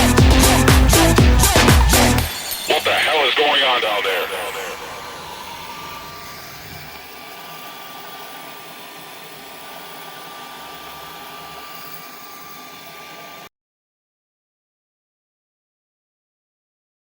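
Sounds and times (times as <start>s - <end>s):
engraving machine whirring: 0.0s - 13.5s.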